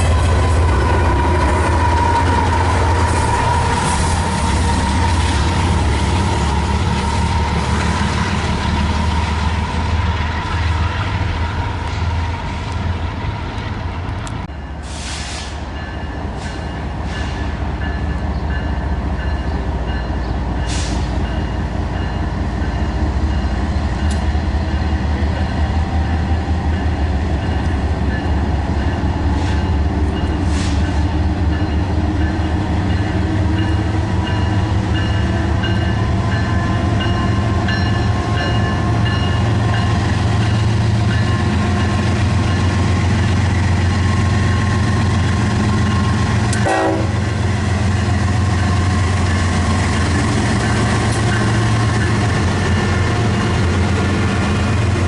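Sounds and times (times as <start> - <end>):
diesel locomotive engine rumbling: 0.0 - 55.0
train wheels clicking on rails: 12.5 - 25.0, 25.6 - 55.0.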